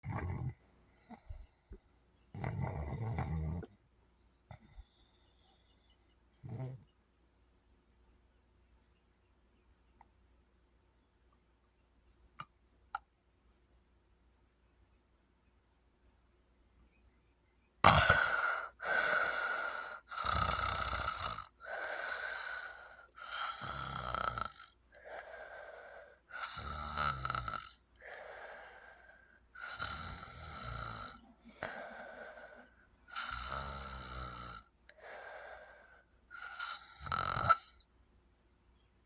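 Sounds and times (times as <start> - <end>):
loud snoring: 0.0 - 0.6, 2.3 - 3.7, 6.4 - 6.8, 17.9 - 29.0, 29.6 - 37.8.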